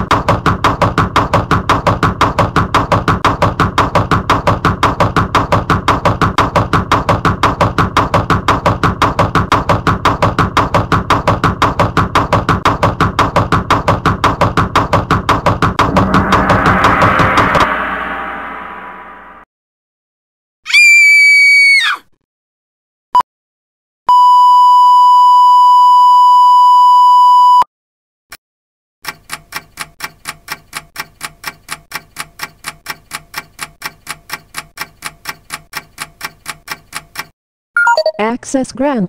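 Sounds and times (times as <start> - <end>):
electronic tone bending downward: 15.8 - 19.4.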